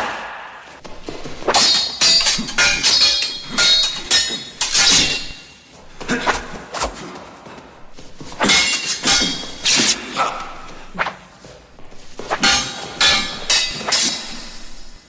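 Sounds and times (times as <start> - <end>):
swords clashing: 0.9 - 15.0.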